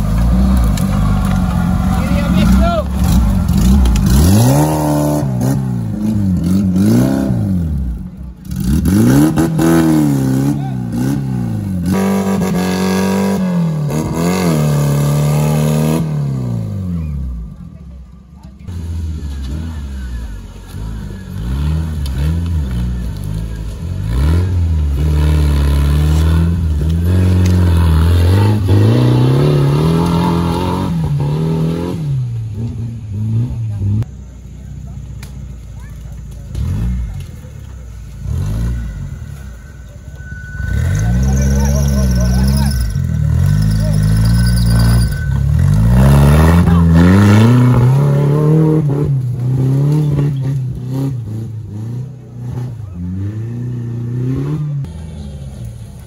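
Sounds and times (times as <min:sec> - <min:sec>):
off-road engine revving: 0:00.0 - 0:56.0
engine revving hard: 0:02.1 - 0:07.8, 0:40.6 - 0:55.0.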